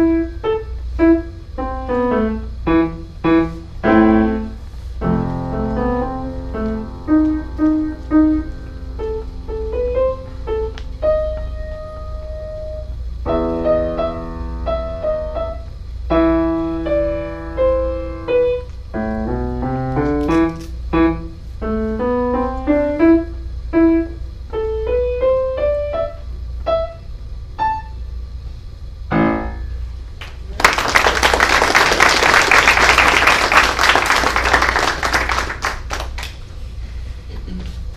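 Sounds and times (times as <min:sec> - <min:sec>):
solo piano playing: 0:00.0 - 0:27.0
audience applause: 0:30.2 - 0:36.4.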